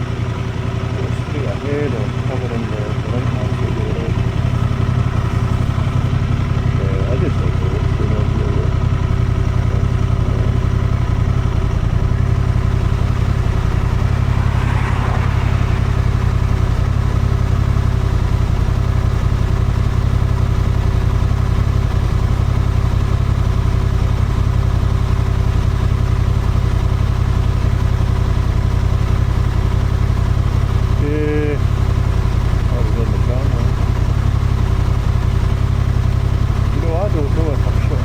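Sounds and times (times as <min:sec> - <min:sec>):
motorcycle engine cruising: 0:00.0 - 0:38.0
rush of noise: 0:07.8 - 0:18.7.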